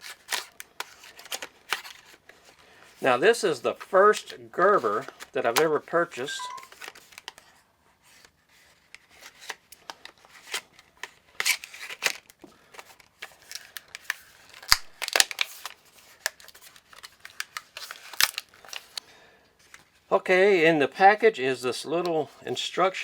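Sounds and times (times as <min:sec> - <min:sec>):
knife cutting plastic packaging: 0:00.0 - 0:02.2, 0:10.3 - 0:12.3, 0:13.2 - 0:19.0.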